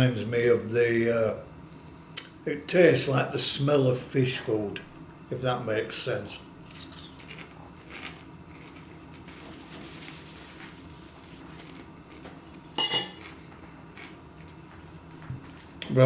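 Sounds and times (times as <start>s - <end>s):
tableware clinking: 12.8s - 13.3s.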